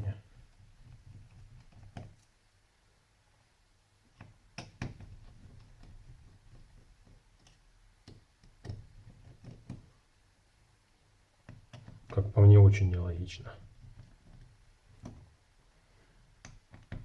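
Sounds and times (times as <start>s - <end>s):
faint tool clicks and knocks: 4.0s - 10.1s, 11.4s - 12.2s, 13.6s - 15.5s, 16.2s - 17.0s.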